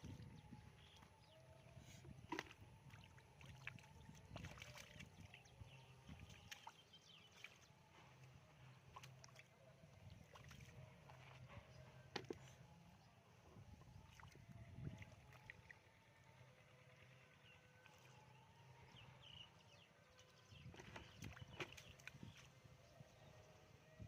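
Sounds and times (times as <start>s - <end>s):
shallow water splashing: 1.6s - 7.8s, 20.5s - 22.5s.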